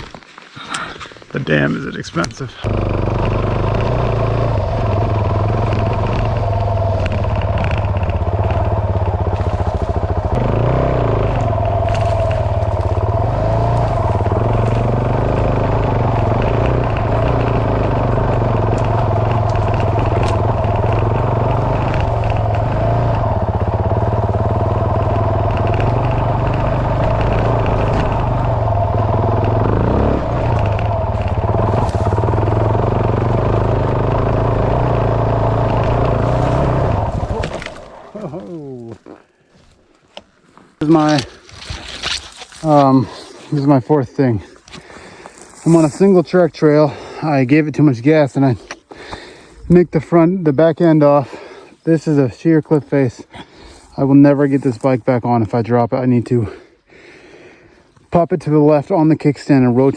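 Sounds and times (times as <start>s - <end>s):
motorcycle engine revving: 2.6s - 39.0s.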